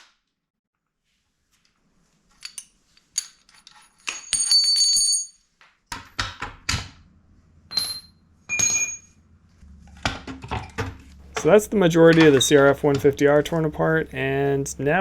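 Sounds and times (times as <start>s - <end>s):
metal tools clinking: 2.3s - 5.5s, 7.7s - 9.2s
low steady hum: 6.9s - 15.0s
sharp ringing hits: 7.7s - 9.2s.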